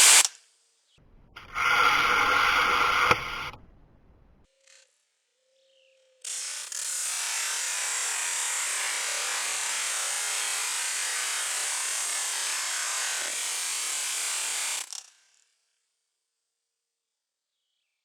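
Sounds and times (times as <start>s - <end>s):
pressure washer spraying water: 1.4s - 3.8s.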